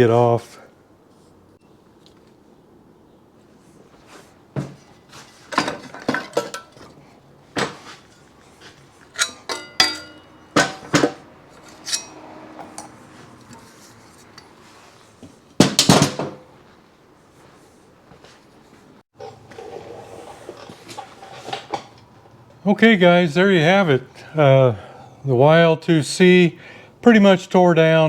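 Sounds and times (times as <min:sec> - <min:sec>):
metallic clanking of tools and parts: 0:04.6 - 0:16.4.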